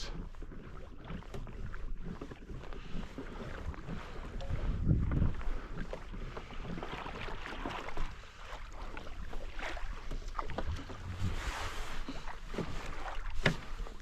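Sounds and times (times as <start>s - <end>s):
water lapping against kayak hull: 0.0s - 14.0s
wind buffeting microphone: 2.8s - 7.2s, 10.5s - 12.0s.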